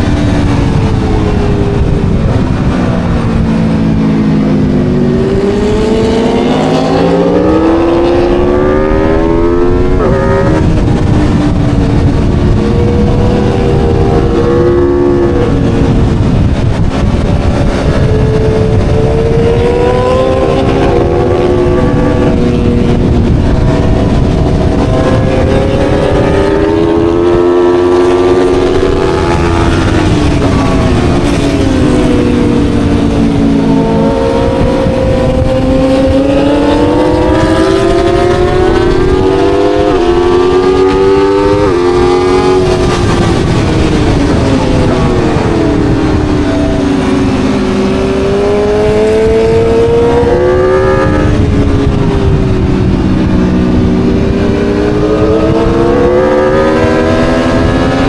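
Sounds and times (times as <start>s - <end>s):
motorcycle engine revving: 0.0s - 58.0s
steady rush of noise: 0.0s - 58.0s.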